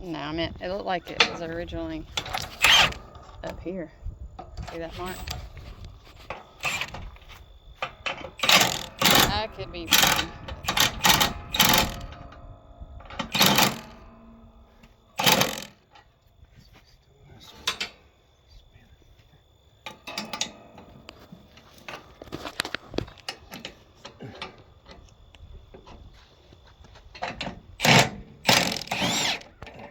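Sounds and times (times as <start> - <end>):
metal parts clattering: 7.9 - 12.2, 13.1 - 14.3, 15.2 - 15.8, 27.2 - 29.9.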